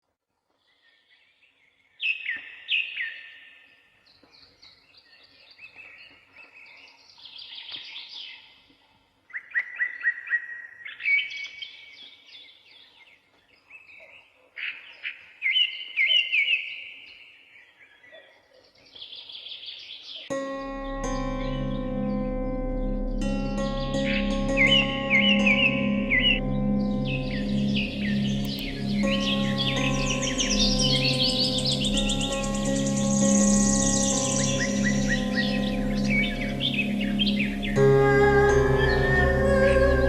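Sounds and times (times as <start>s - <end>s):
songbirds chirping: 0.5s - 40.0s
music with bell-like tones: 20.3s - 40.0s.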